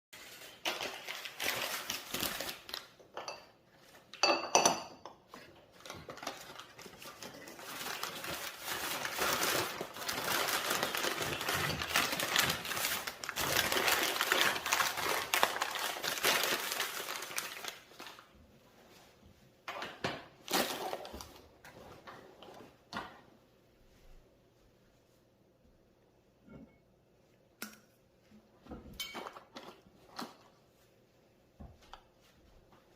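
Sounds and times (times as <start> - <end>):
dishes clinking: 4.2 - 5.2, 28.8 - 29.5.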